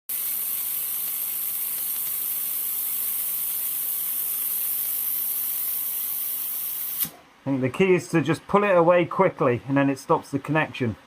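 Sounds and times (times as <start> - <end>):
laser welder hissing: 0.1 - 7.2.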